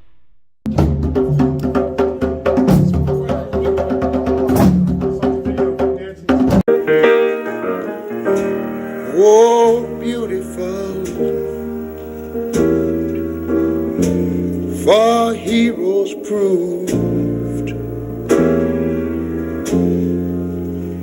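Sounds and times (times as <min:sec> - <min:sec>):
rhythmic music with drums: 0:00.7 - 0:21.0
sustained keyboard chords: 0:06.7 - 0:21.0.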